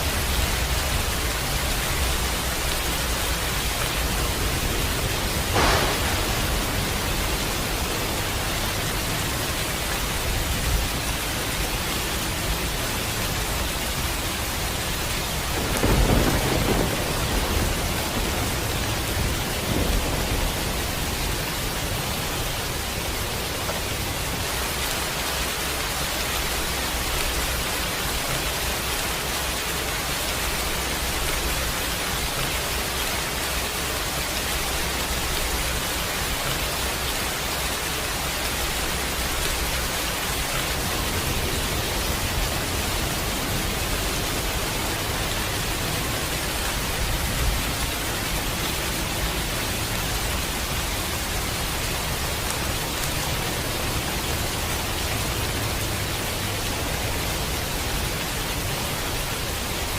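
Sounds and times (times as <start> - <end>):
steady rain: 0.0 - 59.9
rumble of thunder: 0.2 - 10.9, 15.0 - 24.0
sharp thunder crack: 4.0 - 9.0, 15.4 - 21.9.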